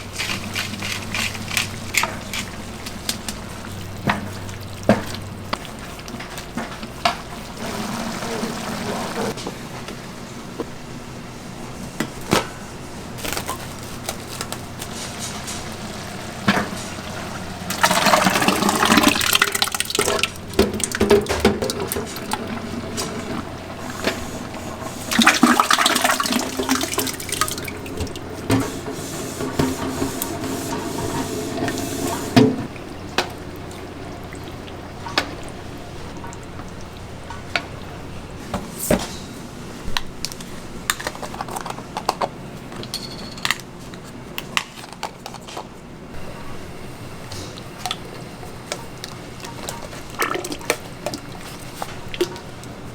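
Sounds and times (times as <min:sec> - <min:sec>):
utensils clicking and knocking: 0:00.0 - 0:03.4
water gushing from a tap: 0:00.0 - 0:06.2, 0:06.8 - 0:09.4, 0:14.6 - 0:37.9.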